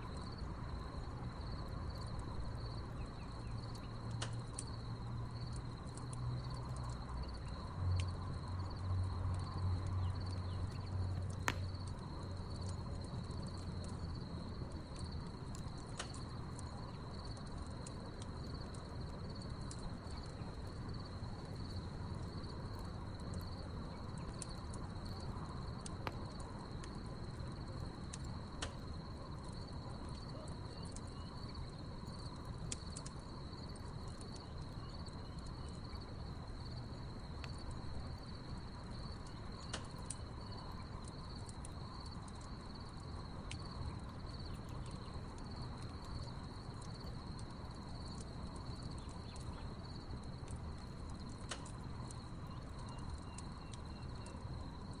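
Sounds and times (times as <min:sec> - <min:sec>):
crickets chirping: 0:00.0 - 0:55.0
wood fire crackling: 0:00.0 - 0:55.0.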